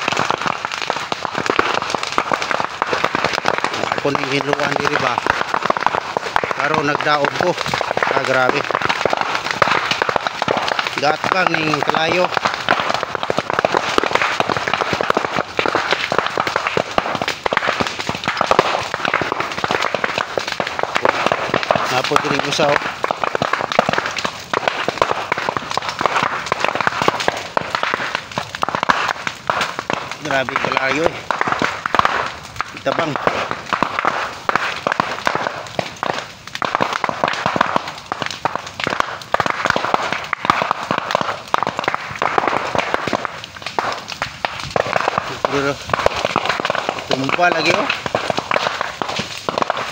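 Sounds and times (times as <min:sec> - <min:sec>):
fire crackling and popping: 0:00.0 - 0:49.9.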